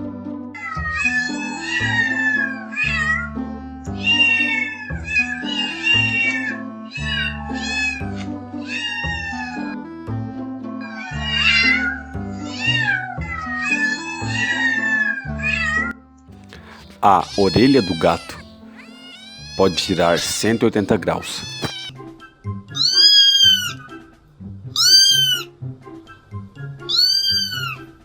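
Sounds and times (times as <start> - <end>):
background music: 0.0 - 28.0
cat meowing: 0.6 - 3.3, 4.0 - 9.8, 10.8 - 15.9, 16.6 - 21.9, 22.8 - 23.8, 24.8 - 25.5, 26.9 - 27.8.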